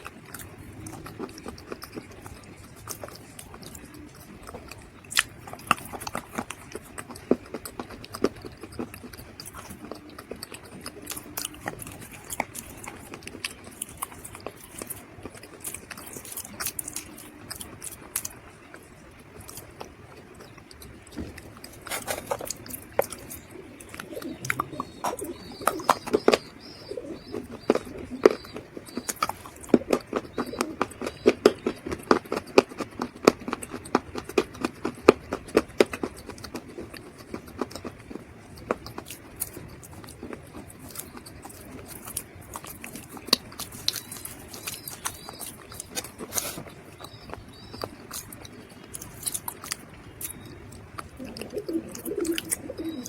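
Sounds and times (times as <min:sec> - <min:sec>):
person chewing crunchy mud: 0:00.0 - 0:53.0
faint bird chirping: 0:18.4 - 0:31.9, 0:40.8 - 0:53.0.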